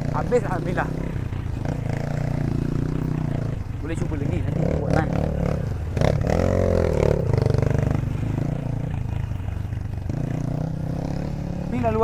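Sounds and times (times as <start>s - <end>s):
bike clattering over rough ground: 0.0s - 12.0s
dirt bike engine running: 0.0s - 12.0s.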